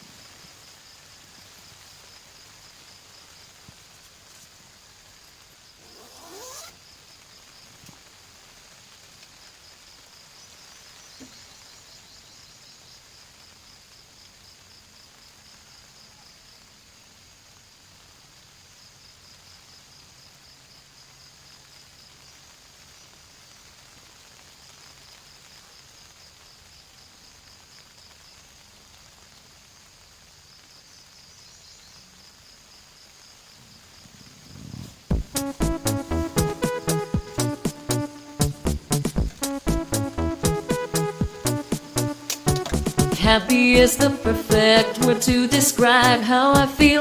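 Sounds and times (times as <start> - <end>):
insects trilling: 0.0 - 35.6
rain hissing: 0.0 - 47.0.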